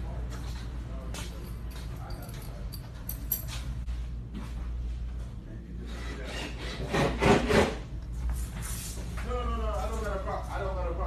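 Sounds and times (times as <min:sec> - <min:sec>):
steady low hum: 0:00.0 - 0:07.0.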